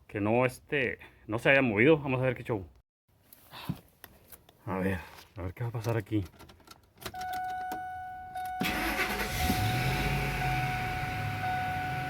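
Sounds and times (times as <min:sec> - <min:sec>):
truck engine cranking and idling: 0:08.6 - 0:12.0.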